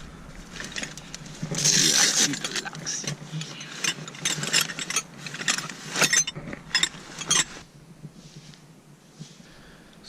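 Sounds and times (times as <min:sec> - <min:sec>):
metal hand tools clinking: 0:00.6 - 0:07.6.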